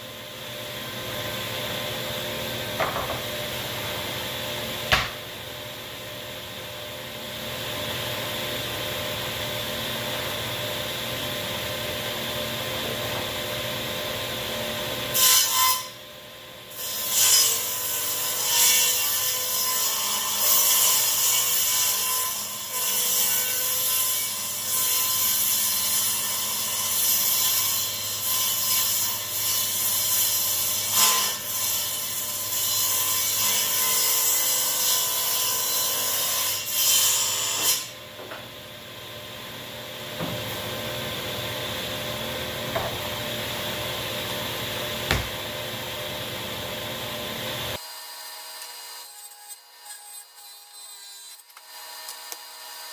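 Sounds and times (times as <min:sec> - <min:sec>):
table saw humming: 0:00.0 - 0:16.0, 0:22.7 - 0:52.7
saw blade cutting wood: 0:47.8 - 0:52.9.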